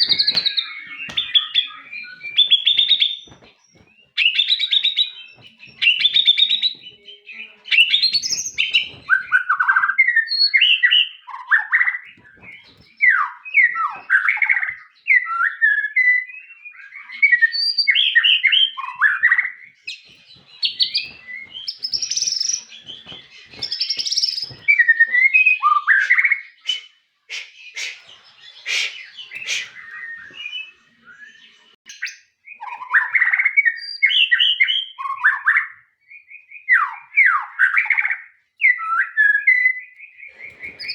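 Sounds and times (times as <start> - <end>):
bird sharp clicking notes: 0.0 - 6.9, 28.7 - 30.2
songbird whistled song: 0.0 - 40.9.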